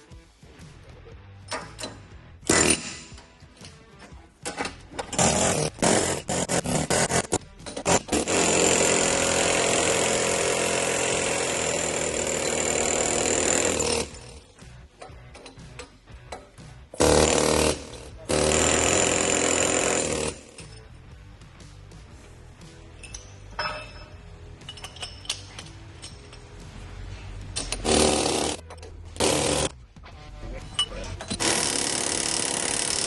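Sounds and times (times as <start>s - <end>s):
pneumatic air hammer bursts: 1.6s - 3.1s, 17.0s - 20.6s, 27.6s - 28.6s, 29.2s - 29.7s, 31.2s - 33.0s.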